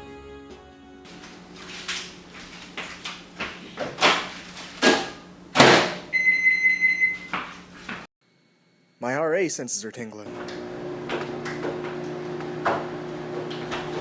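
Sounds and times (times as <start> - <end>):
microwave oven humming: 1.1 - 9.0, 10.3 - 14.0
high beeping tone: 6.1 - 7.3.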